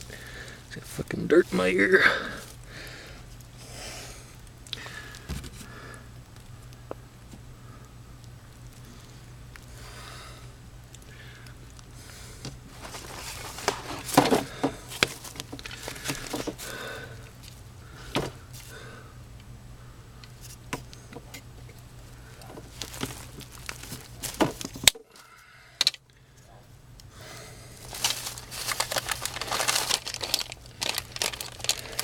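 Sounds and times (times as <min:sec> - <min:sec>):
steady low hum: 0:00.0 - 0:32.0
rustling and scraping: 0:05.1 - 0:05.8, 0:12.5 - 0:16.8, 0:20.4 - 0:24.9, 0:27.7 - 0:32.0.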